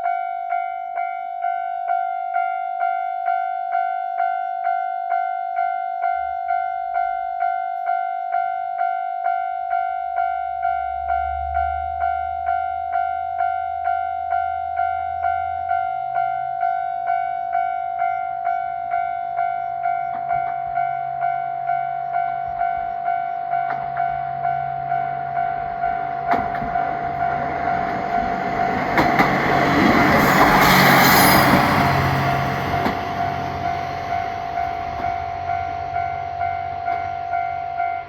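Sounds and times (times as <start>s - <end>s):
level-crossing alarm ringing: 0.0s - 38.0s
train passing: 20.1s - 38.0s
wheels clacking over rail joints: 25.5s - 35.2s.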